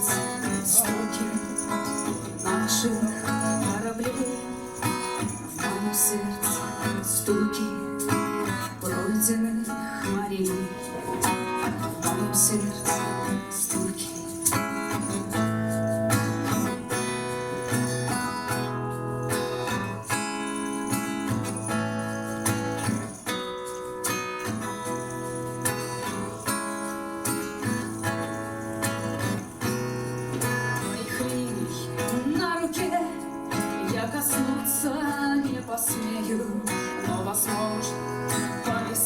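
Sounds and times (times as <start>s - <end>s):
acoustic guitar strumming: 0.0s - 39.0s.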